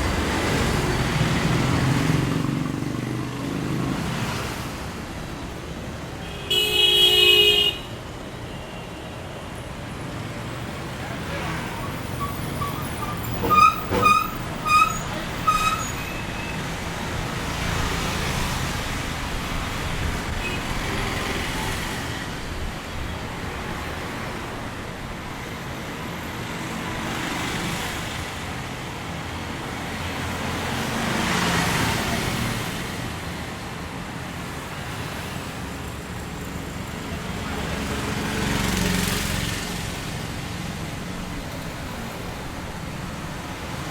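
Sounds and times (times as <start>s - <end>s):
traffic hum: 0.0s - 43.9s
vehicles passing by: 0.0s - 43.9s
vehicle horn tooting: 6.2s - 7.9s, 11.6s - 16.6s.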